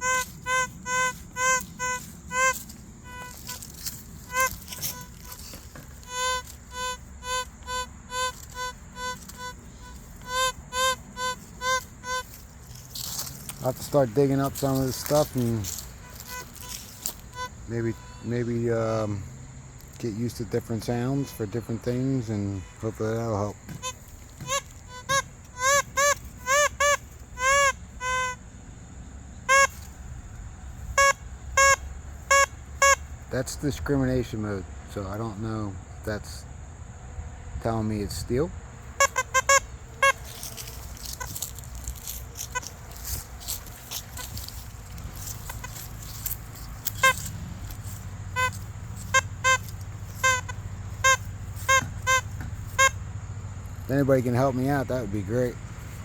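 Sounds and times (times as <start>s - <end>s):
metal detector beeps: 0.0s - 19.1s, 19.9s - 28.4s, 29.5s - 29.9s, 31.0s - 33.0s, 39.0s - 53.0s
steady low hum: 0.0s - 56.0s.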